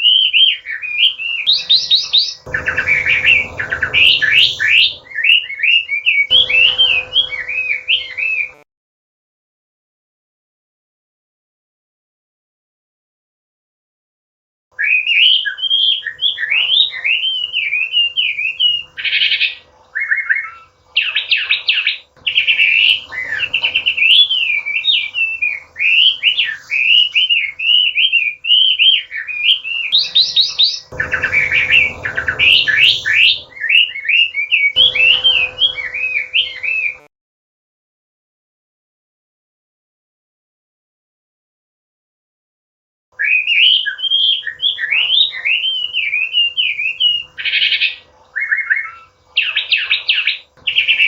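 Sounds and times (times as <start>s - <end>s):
bird singing whistled phrases: 0.0s - 8.6s, 14.8s - 37.1s, 43.2s - 51.0s.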